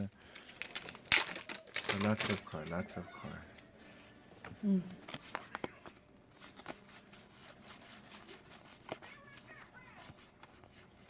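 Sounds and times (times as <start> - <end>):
trading cards clicking and rustling: 0.0 - 2.8.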